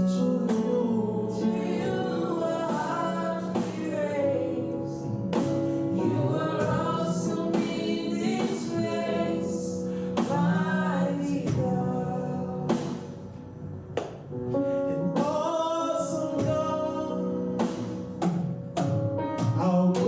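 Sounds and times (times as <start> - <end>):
voices singing long notes: 0.0 - 13.4
musical accompaniment: 0.0 - 20.0.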